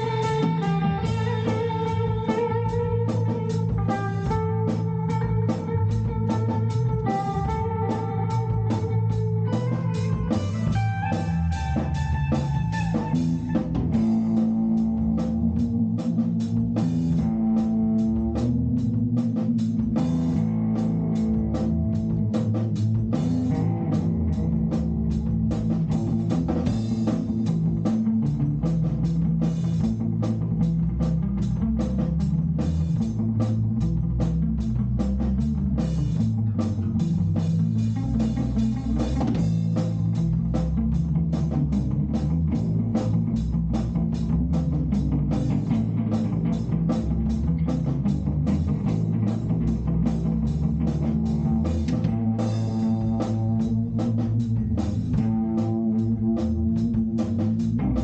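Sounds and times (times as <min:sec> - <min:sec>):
band playing instrumental: 0:00.0 - 0:58.0
guitar note run: 0:00.0 - 0:58.0.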